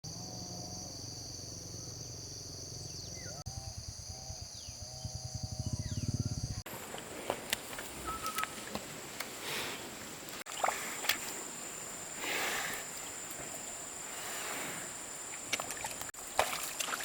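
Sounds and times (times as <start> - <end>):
insects trilling: 0.0 - 17.0
bird whistles: 8.0 - 8.5.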